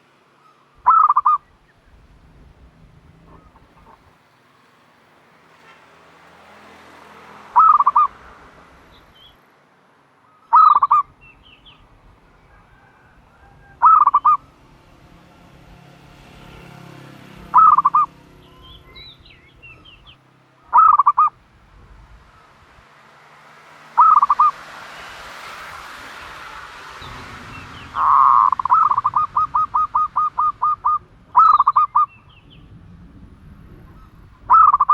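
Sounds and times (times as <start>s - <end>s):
small birds chirping: 0.0s - 4.8s, 7.6s - 8.2s, 8.8s - 9.4s, 10.2s - 14.6s, 16.2s - 22.7s, 23.9s - 24.6s, 26.1s - 34.9s
turtle dove cooing: 0.8s - 1.5s, 7.6s - 8.2s, 10.5s - 11.6s, 12.2s - 14.7s, 17.0s - 21.4s, 24.0s - 24.6s, 27.8s - 32.3s, 33.8s - 34.9s.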